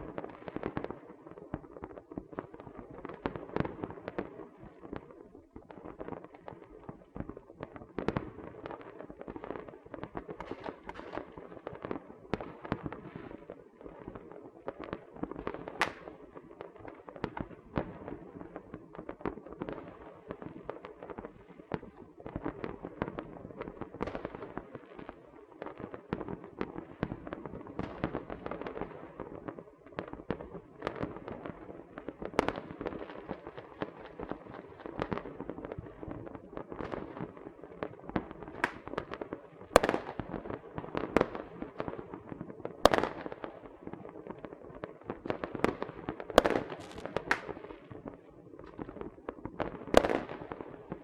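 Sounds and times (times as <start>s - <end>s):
constant crackle: 0.0s - 51.0s
firecrackers popping: 14.7s - 18.0s, 26.9s - 51.0s
loud firework bangs: 38.6s - 39.1s, 46.4s - 47.8s.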